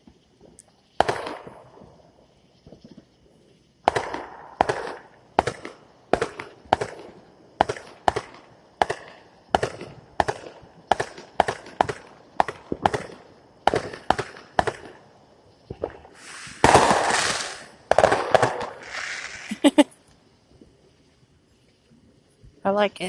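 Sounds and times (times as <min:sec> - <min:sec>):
fireworks sharp bangs: 0:00.9 - 0:03.1, 0:03.8 - 0:19.8.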